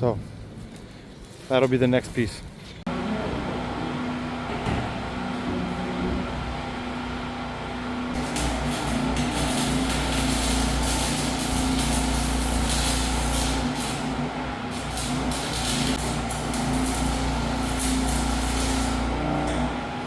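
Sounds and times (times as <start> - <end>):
machine humming: 2.9 - 20.0
crackling hiss of steel cutting: 8.2 - 19.8.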